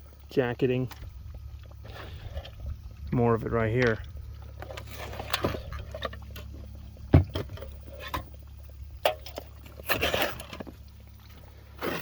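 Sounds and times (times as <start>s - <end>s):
steady low rumble: 0.0s - 9.9s.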